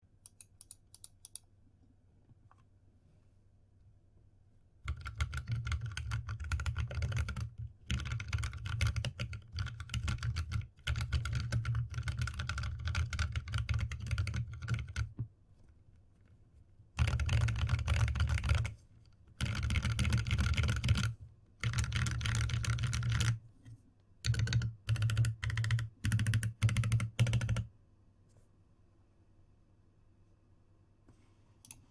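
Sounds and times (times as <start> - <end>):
fast typing on mechanical keyboard: 4.8 - 15.2, 17.0 - 18.8, 19.4 - 23.4, 24.2 - 27.7.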